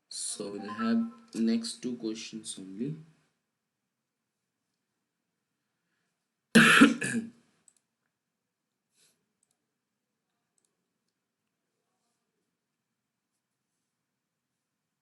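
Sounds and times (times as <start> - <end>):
loud cough: 6.6 - 7.3.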